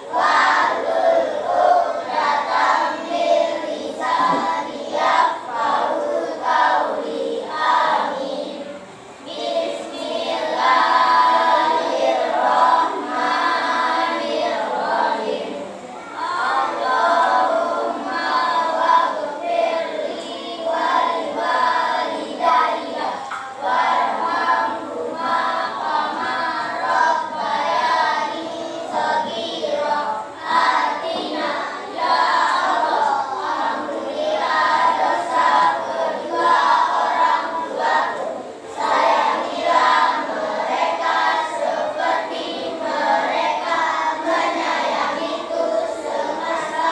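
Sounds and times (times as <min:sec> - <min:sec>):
group of voices singing: 0:00.0 - 0:46.9.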